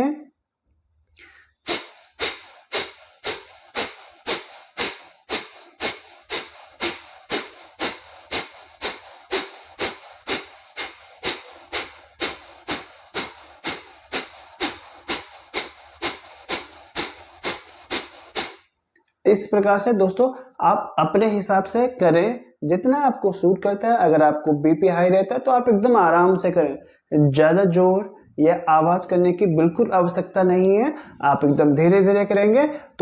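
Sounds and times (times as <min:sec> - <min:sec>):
man exhaling sharply through nose: 0:01.2 - 0:18.8, 0:31.0 - 0:31.2.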